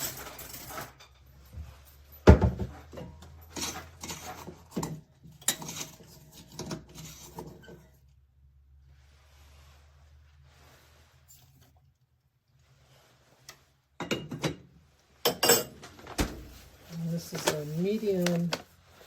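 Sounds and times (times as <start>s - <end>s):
kitchenware clinking and clattering: 0.0s - 8.1s, 14.0s - 18.7s.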